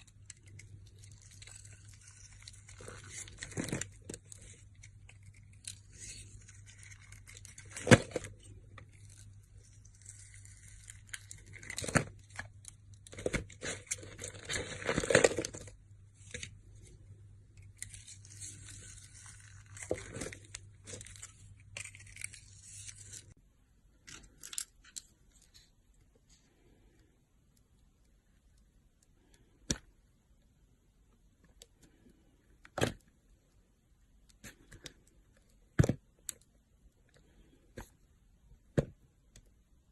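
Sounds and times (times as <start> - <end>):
dry crackling and tearing: 0.0 - 16.5, 17.6 - 23.4.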